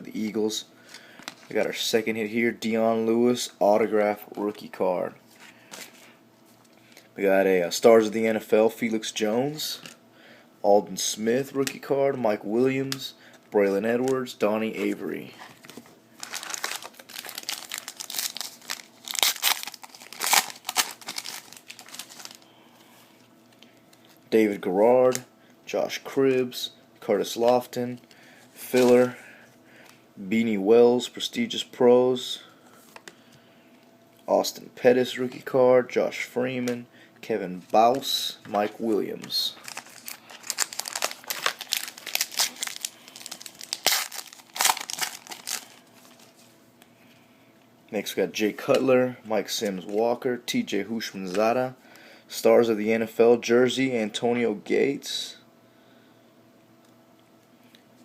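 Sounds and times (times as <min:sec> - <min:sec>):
foil wrapper crinkling and tearing: 0:16.2 - 0:22.4, 0:39.6 - 0:46.4.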